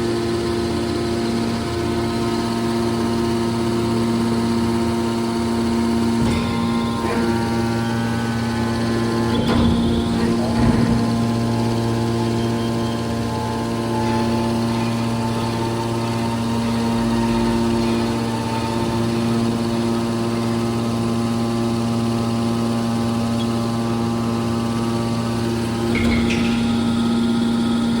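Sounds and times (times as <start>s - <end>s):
hydraulic baler humming: 0.6s - 28.0s
rough machine noise: 1.2s - 28.0s.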